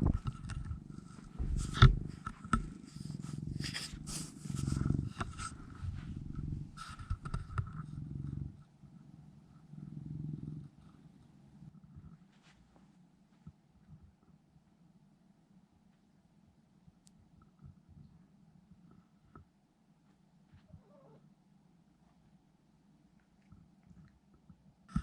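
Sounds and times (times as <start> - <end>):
sharp clicks and knocks: 0.0 - 2.8
cat purring: 0.0 - 13.0, 20.5 - 25.0.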